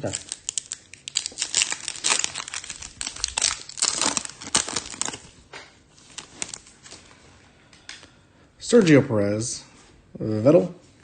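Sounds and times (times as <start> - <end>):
wrapper crinkling and tearing: 0.0 - 5.4, 6.0 - 7.0.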